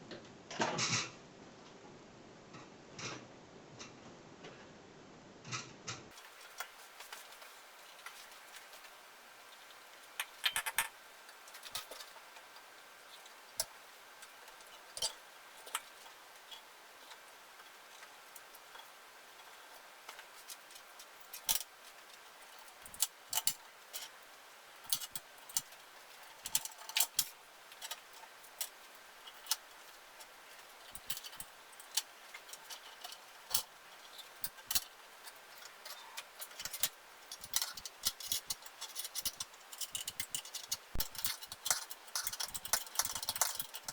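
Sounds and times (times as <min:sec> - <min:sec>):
hand tools clicking and tapping: 0:30.6 - 0:43.9.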